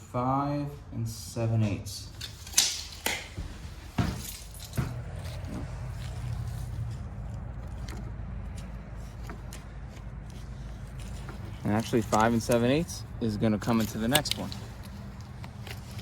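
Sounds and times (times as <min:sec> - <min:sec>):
tools clinking and knocking: 0:02.2 - 0:05.7, 0:11.0 - 0:12.9, 0:13.6 - 0:16.0.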